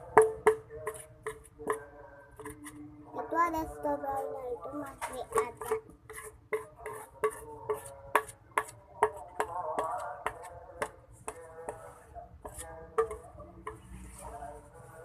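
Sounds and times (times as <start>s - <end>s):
spoon knocking against a pan: 0.0s - 2.8s, 5.1s - 11.8s, 12.5s - 13.9s.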